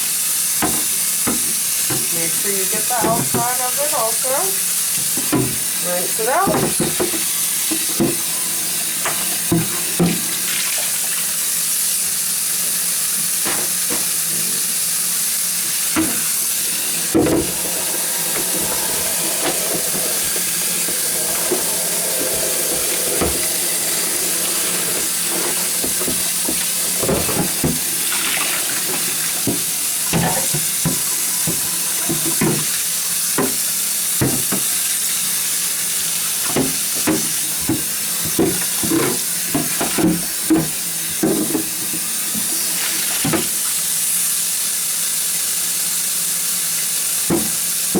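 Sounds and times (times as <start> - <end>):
tap water running into sink: 0.0 - 47.9
drawers knocking and clunking: 6.4 - 10.4, 15.9 - 32.7, 36.4 - 42.6, 47.3 - 47.6.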